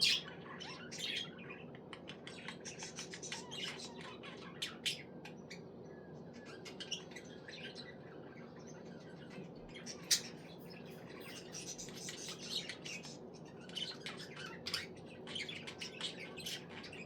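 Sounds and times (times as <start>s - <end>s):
budgerigar chirping: 0.0s - 1.4s
faint low hum: 0.0s - 17.0s.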